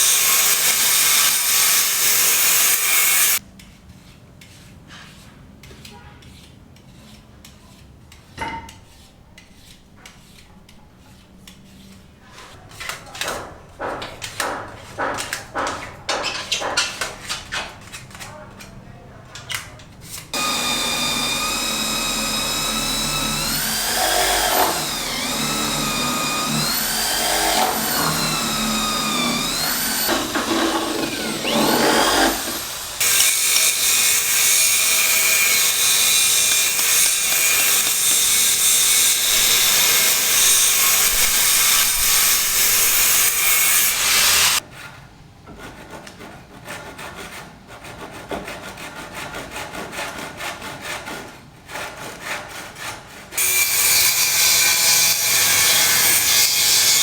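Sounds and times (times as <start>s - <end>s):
power tool motor whine: 20.4s - 37.4s, 39.2s - 44.6s
harsh hissing grinding: 20.4s - 44.6s.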